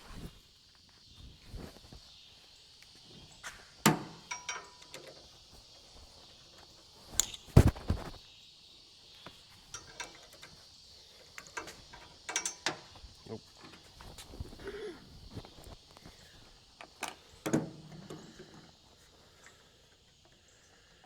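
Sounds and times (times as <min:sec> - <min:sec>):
insects droning: 0:00.0 - 0:21.0
tools and parts knocking: 0:03.9 - 0:05.3, 0:09.7 - 0:10.6, 0:11.4 - 0:13.0.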